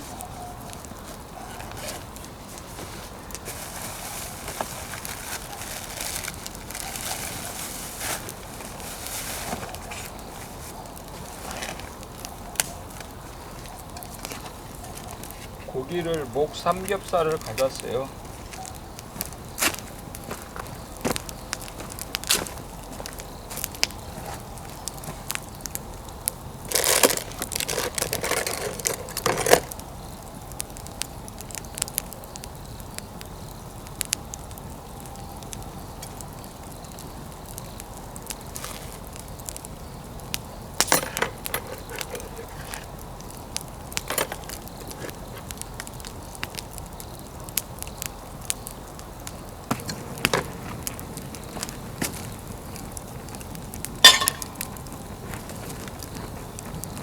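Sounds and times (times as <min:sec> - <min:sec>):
wood fire crackling: 0:00.0 - 0:57.0
pops and snaps: 0:40.3 - 0:57.0.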